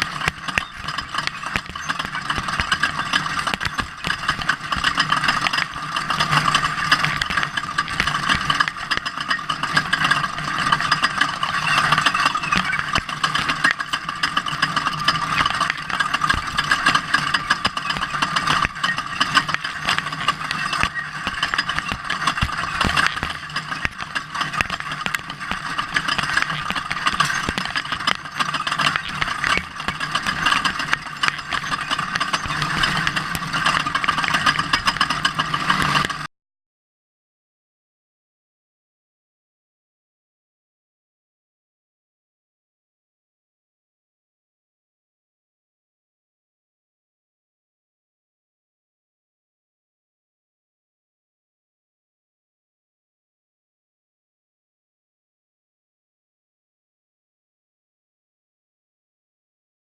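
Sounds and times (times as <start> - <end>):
truck engine running with rattle: 0.0 - 36.3.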